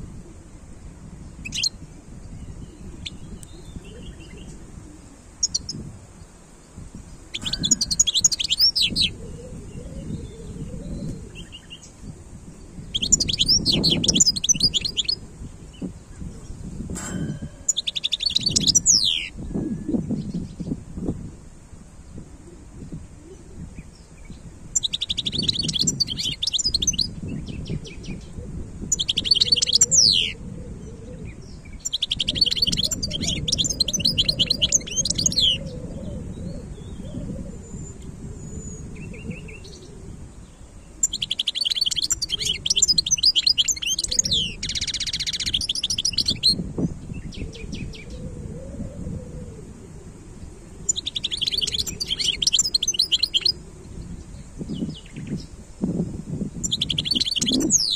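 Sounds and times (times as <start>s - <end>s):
goldfinch twittering: 5.4s - 5.7s, 17.0s - 19.3s, 31.8s - 35.6s, 41.0s - 46.6s, 50.9s - 53.6s, 56.6s - 57.9s.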